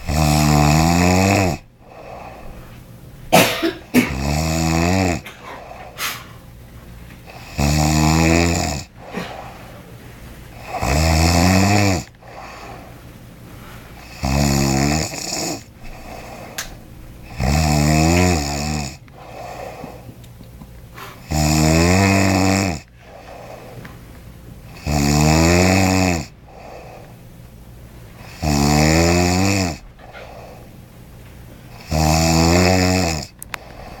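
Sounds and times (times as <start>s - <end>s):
man snoring loudly: 0.0s - 2.4s, 4.0s - 6.0s, 7.2s - 9.5s, 10.5s - 12.9s, 14.0s - 16.6s, 17.2s - 20.1s, 21.2s - 23.7s, 24.7s - 27.1s, 28.2s - 29.8s, 31.7s - 34.0s
quiet breathing: 1.7s - 3.0s, 8.9s - 10.8s, 12.1s - 14.1s, 15.6s - 17.4s, 19.1s - 20.3s, 20.9s - 21.3s, 22.8s - 24.1s, 26.3s - 27.3s, 30.0s - 31.8s, 33.5s - 34.0s.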